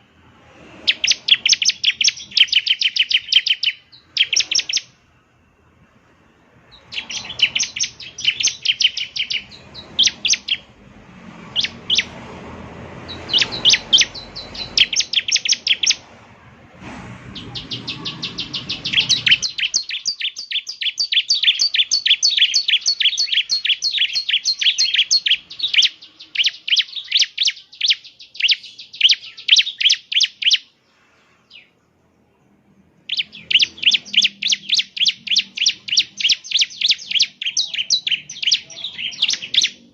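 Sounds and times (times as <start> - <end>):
bird singing and trilling: 0.8 - 5.0, 6.6 - 10.8, 11.5 - 12.2, 13.0 - 16.1, 17.4 - 30.8, 33.0 - 39.9
faint low rumble: 4.9 - 19.9.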